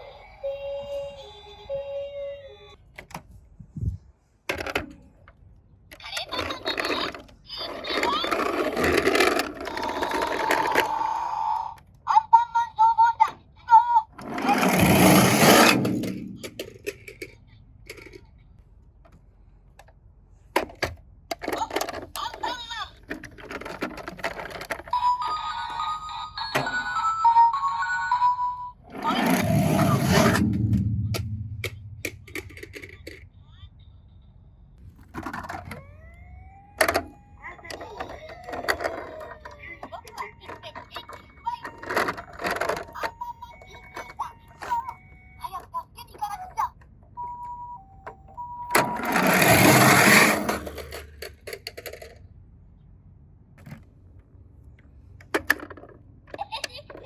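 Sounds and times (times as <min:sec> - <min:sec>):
toy cars clattering clicks: 0:04.5 - 0:11.2, 0:14.2 - 0:18.4, 0:20.6 - 0:25.0, 0:37.7 - 0:44.8, 0:49.0 - 0:52.3, 0:55.1 - 0:57.0
toy cars rolling down plastic slide: 0:06.0 - 0:11.9, 0:14.2 - 0:18.3, 0:21.3 - 0:30.4, 0:35.0 - 0:44.9, 0:48.6 - 0:52.2
two-tone ambulance siren: 0:35.6 - 0:39.6
electronic beeping tune: 0:47.2 - 0:49.1.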